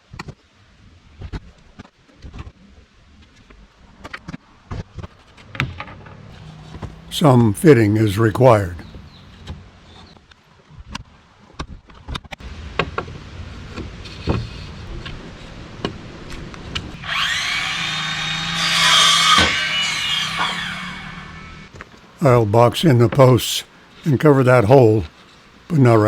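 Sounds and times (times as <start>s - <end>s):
power tool motor whining: 17.0s - 21.7s.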